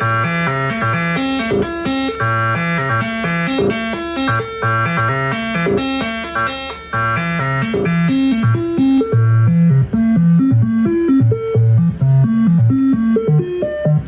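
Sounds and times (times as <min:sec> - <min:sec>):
synthesizer arpeggio: 0:00.0 - 0:14.0
low synth bass notes: 0:07.0 - 0:14.0.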